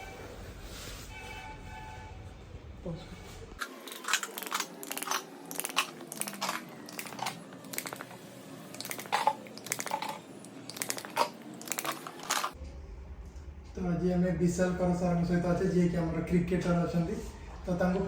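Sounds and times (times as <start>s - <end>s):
joints cracking and popping: 3.6s - 12.6s.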